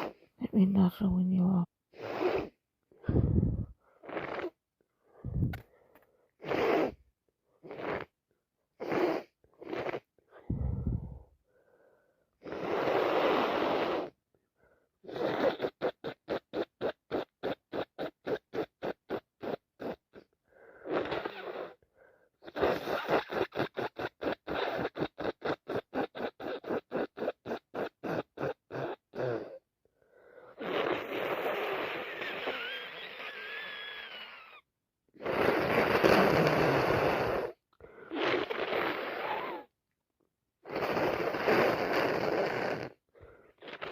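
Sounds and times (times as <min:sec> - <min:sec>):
person blowing nose: 0:00.0 - 0:00.2, 0:01.9 - 0:04.6, 0:06.4 - 0:07.0, 0:07.6 - 0:08.2, 0:08.8 - 0:11.2, 0:12.4 - 0:14.2, 0:15.0 - 0:21.8, 0:22.4 - 0:29.6, 0:30.3 - 0:34.6, 0:35.2 - 0:39.7, 0:40.6 - 0:43.9
person sniffling: 0:35.2 - 0:39.7.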